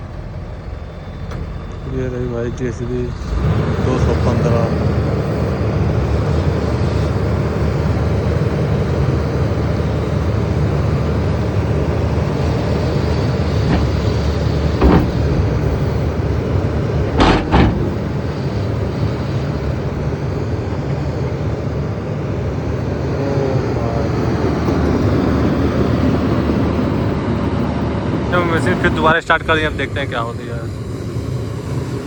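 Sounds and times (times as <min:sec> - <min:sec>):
diesel engine running under load: 0:00.0 - 0:32.0
sharp machine knocks: 0:13.5 - 0:18.4.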